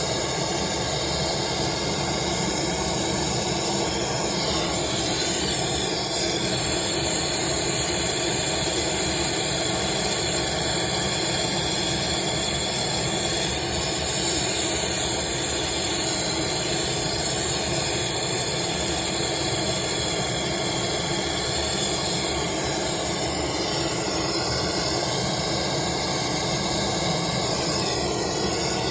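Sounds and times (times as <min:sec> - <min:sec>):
hvac machinery hiss and hum: 0:00.0 - 0:28.9.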